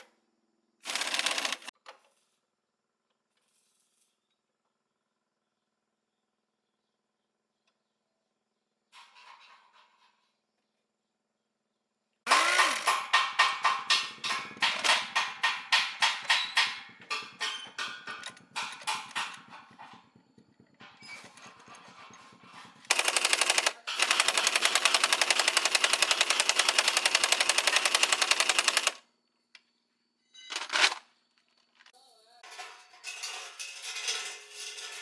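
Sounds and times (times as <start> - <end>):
fast mechanical rattle: 0.9 - 1.7, 12.3 - 29.0.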